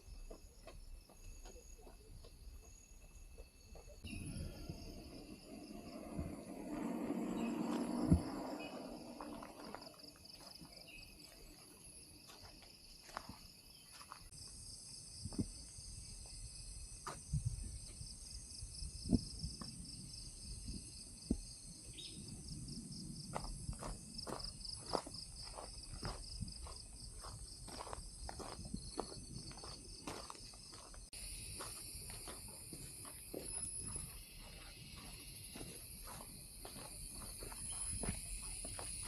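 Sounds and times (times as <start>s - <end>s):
footsteps on a trail: 0.0s - 4.2s, 6.7s - 14.4s, 23.3s - 39.0s
higher-pitched insect: 0.0s - 39.0s
insects trilling: 0.0s - 39.0s.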